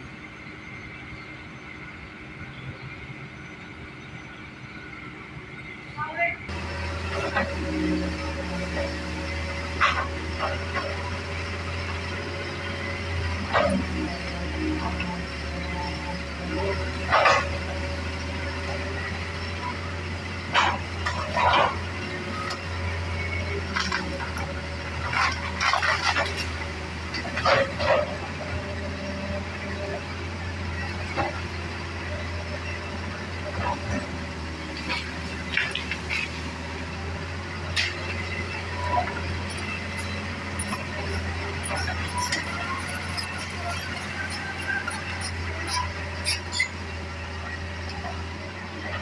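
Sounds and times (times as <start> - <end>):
excavator diesel engine droning: 0.0 - 49.0.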